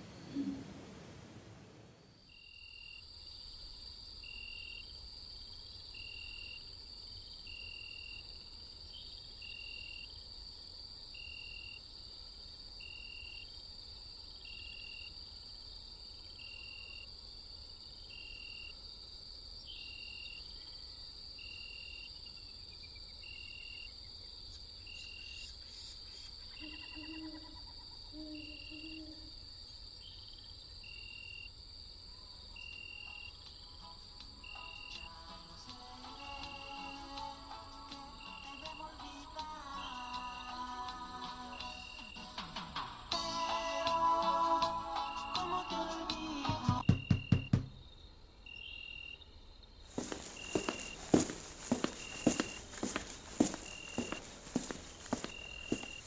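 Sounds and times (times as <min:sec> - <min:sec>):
low paired hooting calls: 0:00.0 - 0:02.0
cricket chirp: 0:02.1 - 0:46.0, 0:46.8 - 0:56.0.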